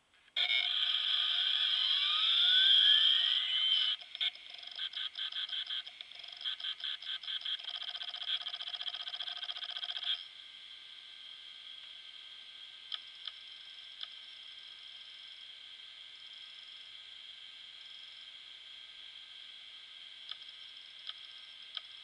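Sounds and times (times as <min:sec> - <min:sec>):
drive whine rising in pitch: 0:00.4 - 0:04.1
drive whirring: 0:00.4 - 0:07.6.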